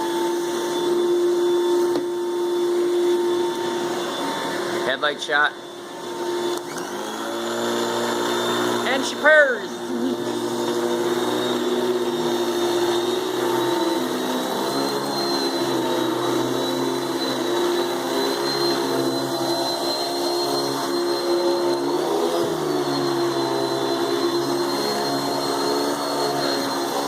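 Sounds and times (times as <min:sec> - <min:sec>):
vacuum cleaner running: 0:00.0 - 0:27.0.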